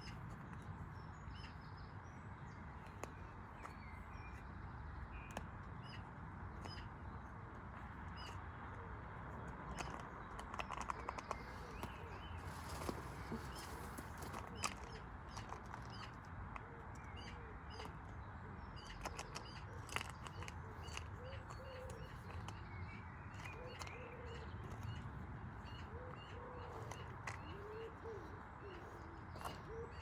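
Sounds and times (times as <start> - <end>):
low bird calls: 18.5 - 30.0.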